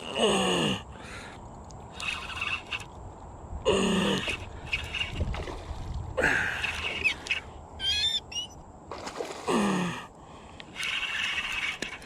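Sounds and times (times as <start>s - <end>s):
bird squawking: 6.6s - 8.6s
high warbling bird chirp: 6.8s - 8.6s.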